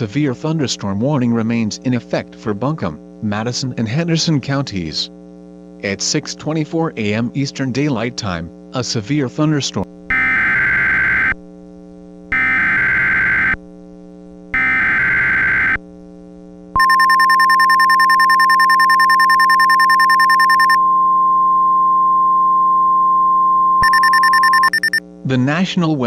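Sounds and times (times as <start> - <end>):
buzzing digital data tones: 10.1 - 11.4, 12.3 - 13.6, 14.5 - 15.8, 16.8 - 20.8, 23.7 - 25.0
steady alarm tone: 10.1 - 11.4, 12.3 - 13.6, 14.5 - 15.8, 16.8 - 25.0
fast-pulsing high beep: 16.8 - 20.8, 23.8 - 25.0.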